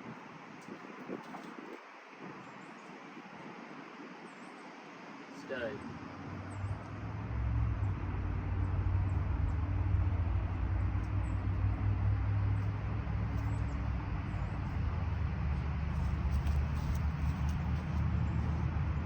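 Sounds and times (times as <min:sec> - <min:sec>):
low mechanical drone: 0:05.8 - 0:19.0.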